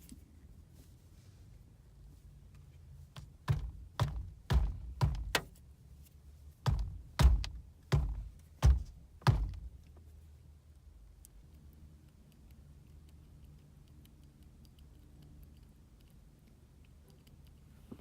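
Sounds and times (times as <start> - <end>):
dull hard knocks: 3.2 - 5.5, 6.6 - 9.8.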